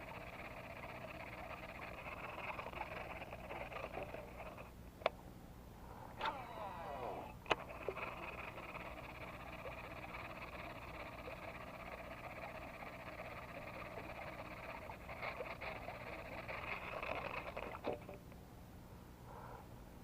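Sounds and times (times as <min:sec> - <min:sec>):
chorus of calling frogs: 0:00.0 - 0:04.7, 0:07.2 - 0:18.2.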